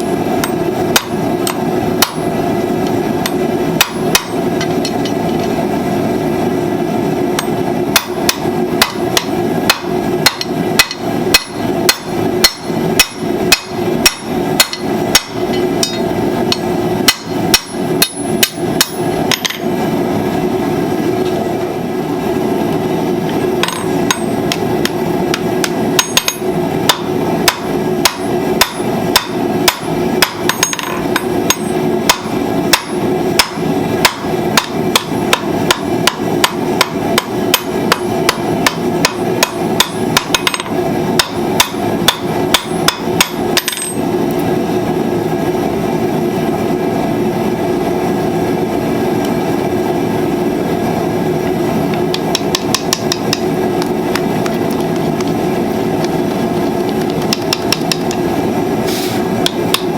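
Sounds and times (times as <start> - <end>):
hammer striking steel on anvil: 0.0 - 5.6, 7.4 - 19.7, 23.6 - 44.1, 52.1 - 53.9, 59.4 - 59.9.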